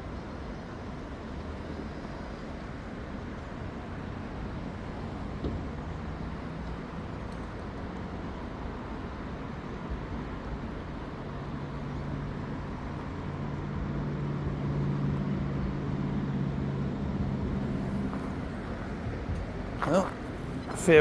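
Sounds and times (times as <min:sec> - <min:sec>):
traffic noise: 0:17.2 - 0:21.0.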